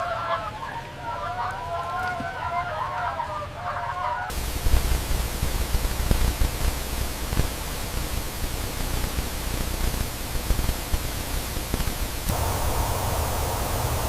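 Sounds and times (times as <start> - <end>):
steady broadband hiss: 4.3 - 14.0.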